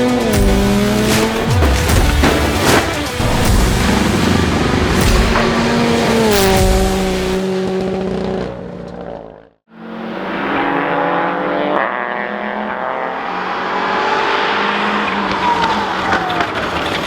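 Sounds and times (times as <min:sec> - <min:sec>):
rally car engine at high revs: 0:00.0 - 0:17.0
sharp bangs: 0:00.3 - 0:07.4.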